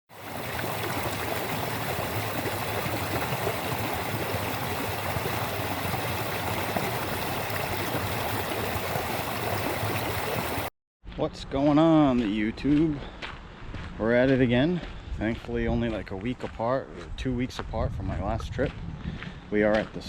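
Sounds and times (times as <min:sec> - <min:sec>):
water rushing and splashing: 0:00.1 - 0:10.7.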